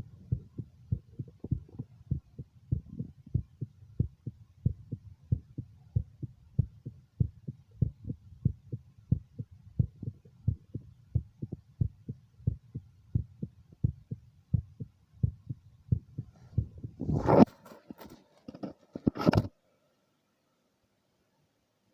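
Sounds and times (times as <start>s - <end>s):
heartbeat through stethoscope: 0.0s - 17.5s
stethoscope rubbing and knocking: 16.5s - 19.5s.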